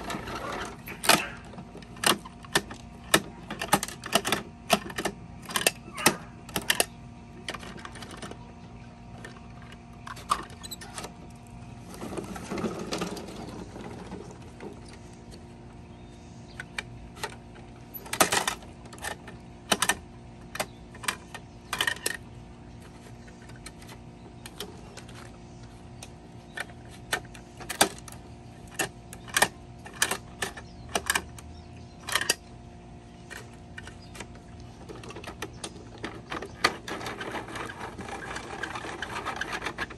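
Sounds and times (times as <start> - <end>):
faint hum: 0.0 - 39.9
plastic toy mechanism clicking: 18.1 - 22.2, 26.6 - 31.4.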